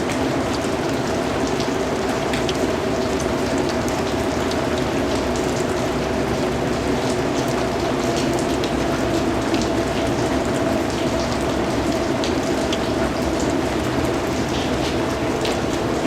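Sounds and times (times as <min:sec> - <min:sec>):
raindrops pattering on surface: 0:00.0 - 0:16.0
steady rain hissing: 0:00.0 - 0:16.0.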